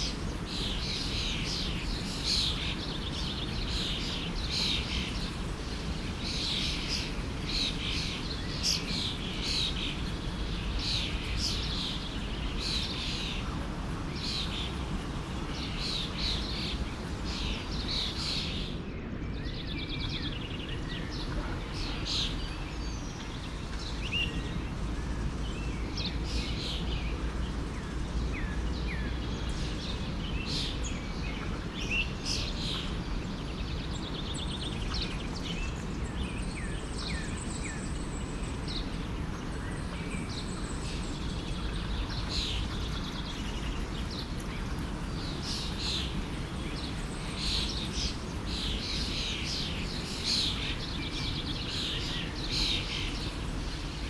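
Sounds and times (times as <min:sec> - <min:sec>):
songbirds chirping: 0:00.0 - 0:54.0
stream flowing: 0:09.2 - 0:18.4.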